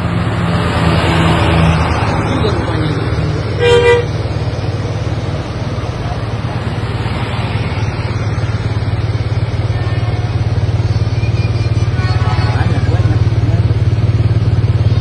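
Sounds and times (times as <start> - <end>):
vehicle engine pulsing hum: 0.0 - 15.0.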